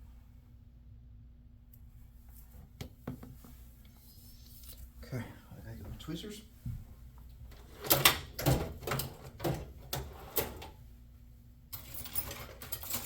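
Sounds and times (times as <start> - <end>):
tools clattering: 11.7 - 13.0.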